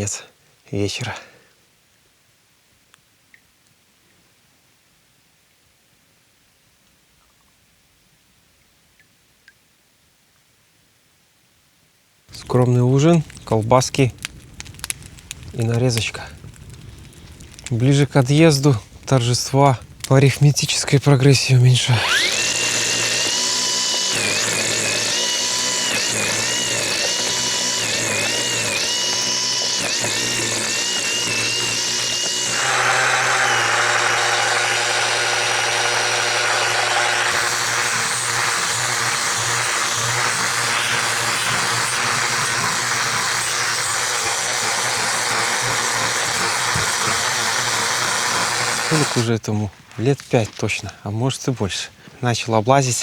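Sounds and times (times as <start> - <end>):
angle grinder sanding wood: 20.6 - 49.3.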